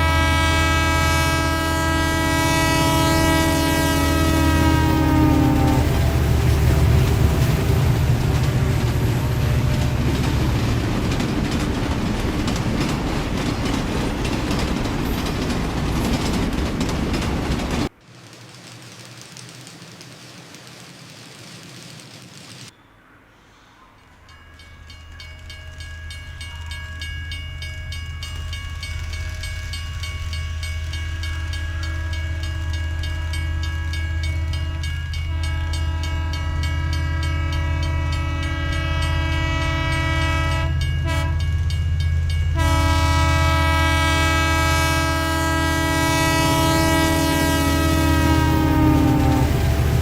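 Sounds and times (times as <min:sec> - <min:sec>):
train horn tones: 0:00.0 - 0:11.2, 0:25.2 - 0:27.2, 0:31.0 - 0:41.7, 0:42.3 - 0:50.0
train rumble: 0:00.0 - 0:50.0.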